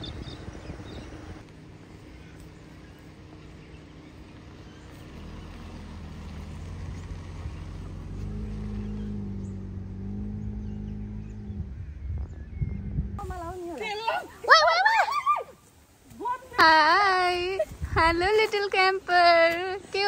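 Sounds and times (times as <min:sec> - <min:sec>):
car engine and road hum: 0:00.0 - 0:13.8.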